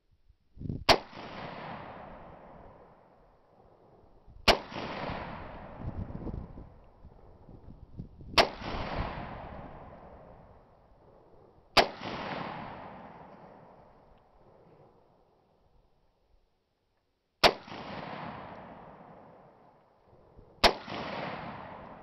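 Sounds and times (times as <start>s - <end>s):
rifle shots with echo: 0.9s - 7.2s, 8.3s - 15.3s, 17.4s - 19.8s, 20.5s - 22.0s.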